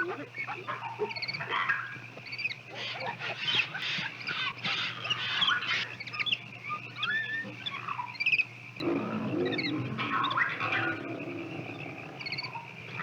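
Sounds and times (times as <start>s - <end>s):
bird and monkey calls: 0.0s - 13.0s
steady low hum: 0.0s - 13.0s
low-pitched animal sound: 8.8s - 13.0s.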